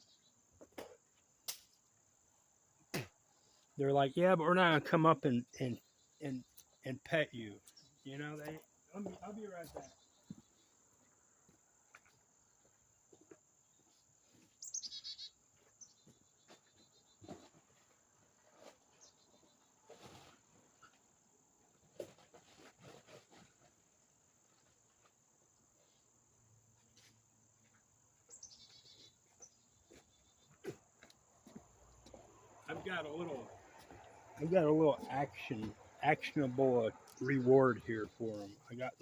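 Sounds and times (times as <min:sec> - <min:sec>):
small bird chirping: 0:13.7 - 0:17.4, 0:27.7 - 0:30.7.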